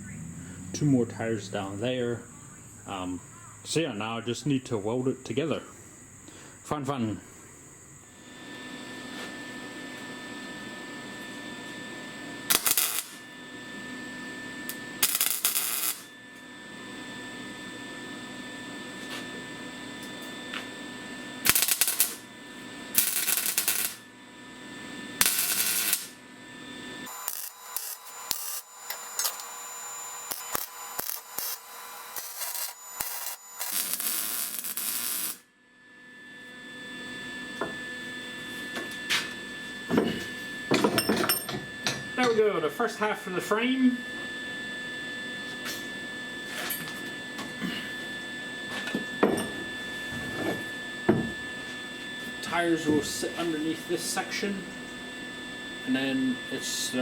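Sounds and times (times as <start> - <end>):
welder steady hum: 0.0 - 57.0
arc welder crackling: 12.4 - 13.4, 14.6 - 16.5, 19.9 - 24.2, 24.8 - 26.3, 27.0 - 35.6.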